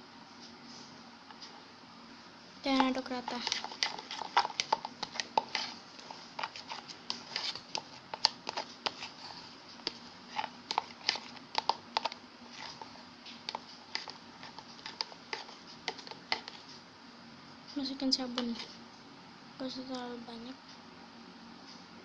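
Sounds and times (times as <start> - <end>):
stirrer tapping against container: 2.7 - 16.7.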